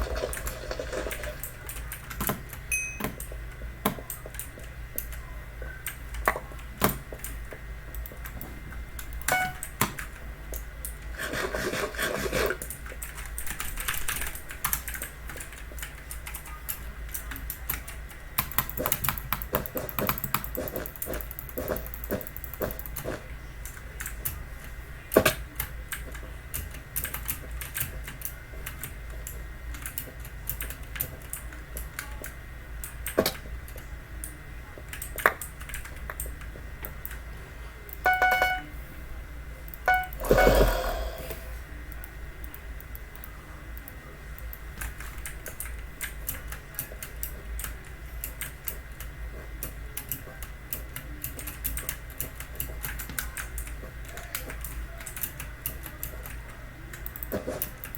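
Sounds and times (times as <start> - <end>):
clicky keyboard typing: 5.8 - 11.0, 12.6 - 24.4, 39.7 - 40.9
short pitched tone: 39.9 - 41.4.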